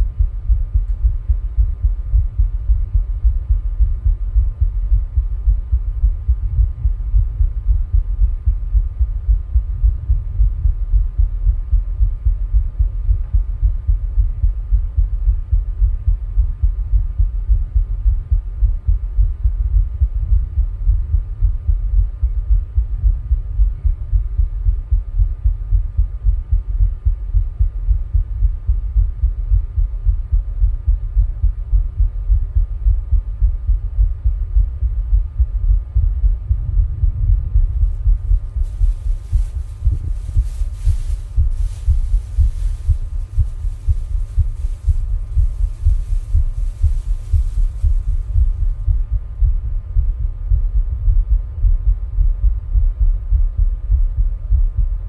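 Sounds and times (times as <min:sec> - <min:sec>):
heart beating: 0:00.0 - 0:55.0
breathing into a plastic bag: 0:38.2 - 0:48.7.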